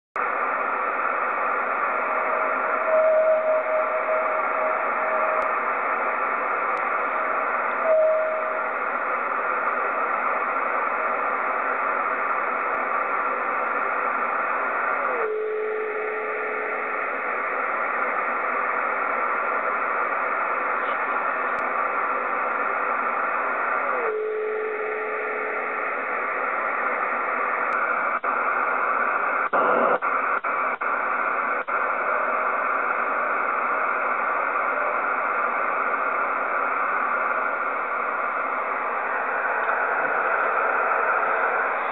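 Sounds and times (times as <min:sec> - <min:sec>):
radio crackles: 0:00.2 - 0:41.9
radio receiver hiss: 0:00.2 - 0:41.9
brief whistling radio tones: 0:01.8 - 0:06.1, 0:07.0 - 0:09.6, 0:14.6 - 0:17.6, 0:23.0 - 0:26.5.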